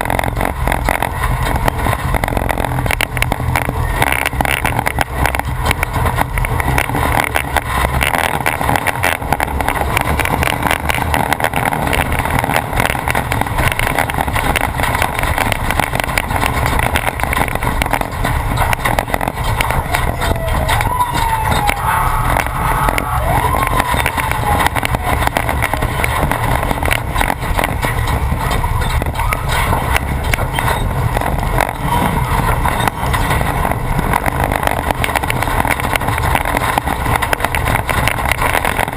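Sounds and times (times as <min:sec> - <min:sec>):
truck clattering over bumps: 0:00.0 - 0:38.9
truck engine running loud: 0:00.0 - 0:38.9
wavering whine: 0:00.0 - 0:38.9.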